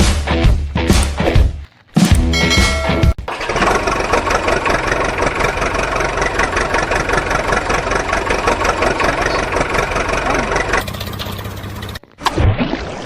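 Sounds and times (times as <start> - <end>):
diesel engine idling: 3.2 - 12.1.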